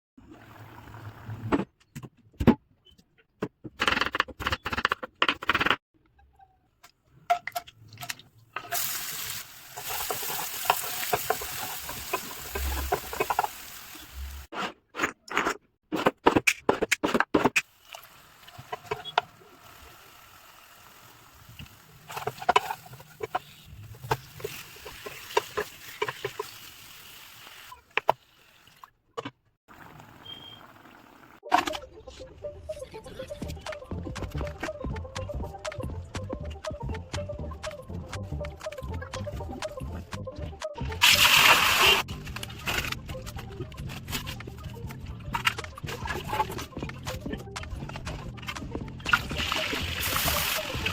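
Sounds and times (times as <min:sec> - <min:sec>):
utensil stirring and scraping pan: 0:08.7 - 0:14.5, 0:22.1 - 0:26.9.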